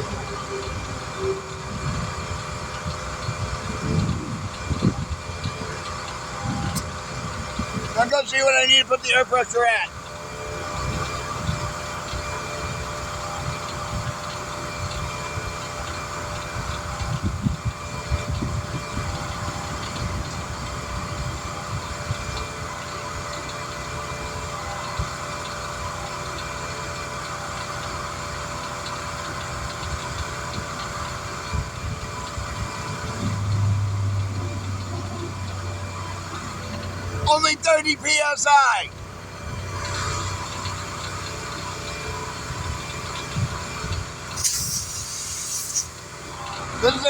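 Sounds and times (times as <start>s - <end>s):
steady mechanical hum: 0.0s - 47.0s
wind rumbling on microphone: 0.6s - 8.0s, 16.6s - 22.5s, 29.9s - 37.2s.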